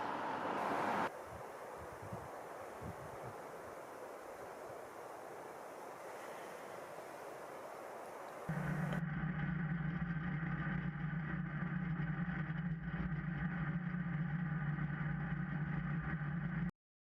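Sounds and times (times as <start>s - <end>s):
vehicle engine droning: 0.0s - 1.2s, 8.4s - 16.7s.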